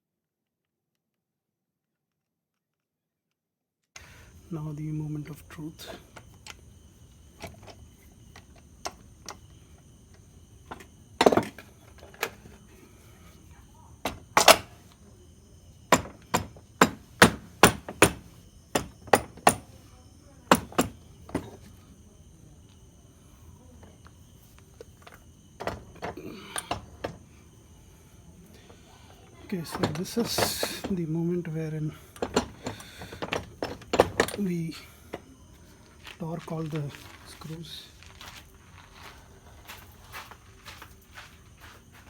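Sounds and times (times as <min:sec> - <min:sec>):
mallet knocking on engine crankcase: 0:15.9 - 0:19.7, 0:20.5 - 0:21.6.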